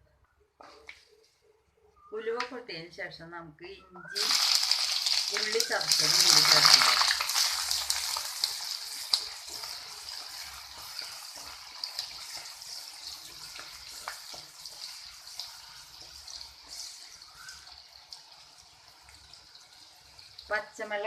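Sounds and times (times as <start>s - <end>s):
ginger and onions sizzling in oil: 4.0s - 21.0s
small crackles in oil: 4.2s - 20.5s.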